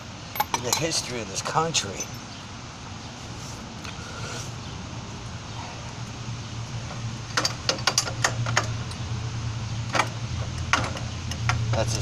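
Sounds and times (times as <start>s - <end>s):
hand tools clinking on metal: 0.4s - 1.1s, 1.8s - 2.3s.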